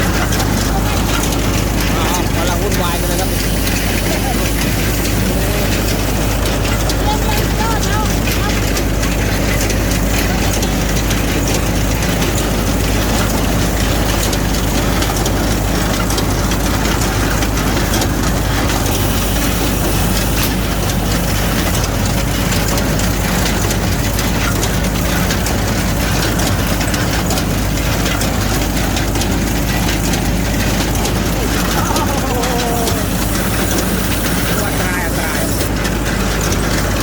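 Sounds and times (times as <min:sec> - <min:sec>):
hay baler running: 0:00.0 - 0:37.0.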